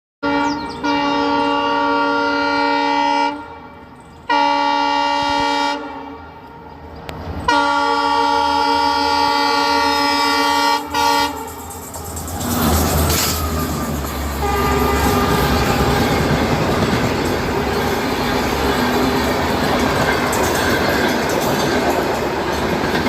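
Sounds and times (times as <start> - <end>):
train horn blasts: 0.2 - 11.9, 13.0 - 19.4.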